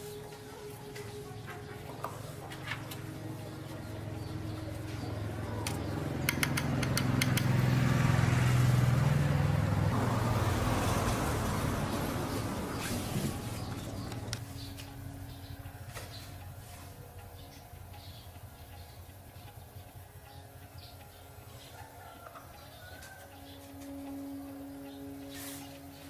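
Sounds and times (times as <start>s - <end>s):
vehicle engine passing by: 2.4s - 16.6s
sharp clicks: 5.6s - 7.7s.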